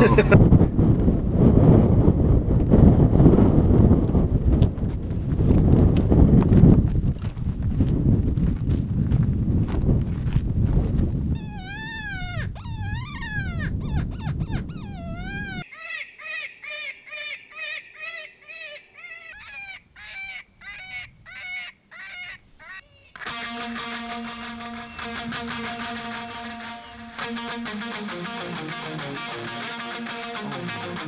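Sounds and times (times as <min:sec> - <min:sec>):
coyote howls: 0:00.0 - 0:00.4, 0:11.4 - 0:23.2
coyote yips: 0:11.4 - 0:23.2
guitar music: 0:23.2 - 0:31.0.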